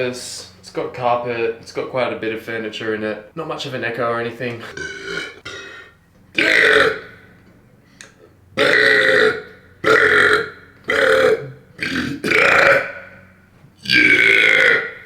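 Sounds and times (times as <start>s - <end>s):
man burping: 4.6s - 7.3s, 8.0s - 13.2s, 13.8s - 15.0s.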